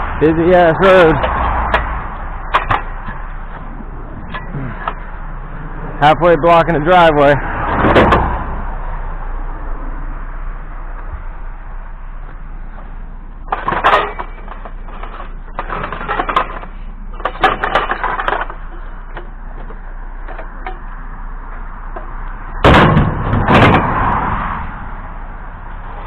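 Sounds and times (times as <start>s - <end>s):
hard objects clattering: 13.5s - 19.3s.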